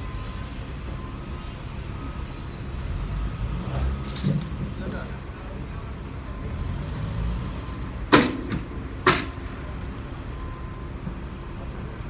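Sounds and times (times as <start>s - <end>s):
nails being hammered: 8.1s - 9.6s.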